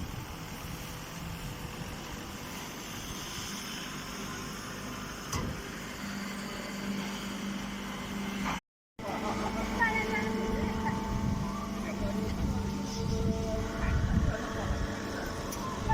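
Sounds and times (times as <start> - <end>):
baler machine humming: 3.7 - 15.9.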